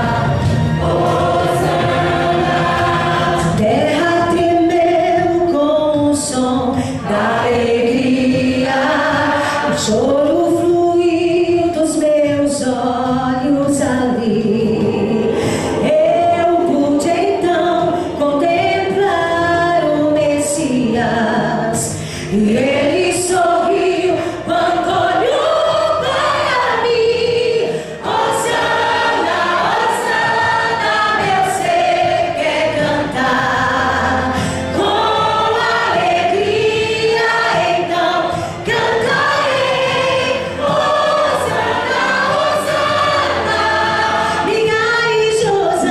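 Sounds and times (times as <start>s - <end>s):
church choir singing: 0.0s - 5.8s, 6.4s - 12.1s, 12.7s - 45.9s.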